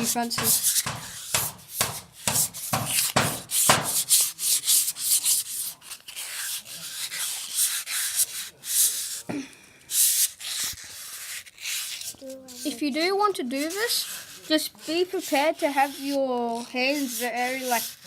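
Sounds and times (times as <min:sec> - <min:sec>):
sandpaper rubbing on metal: 0:00.0 - 0:09.3, 0:09.9 - 0:18.0.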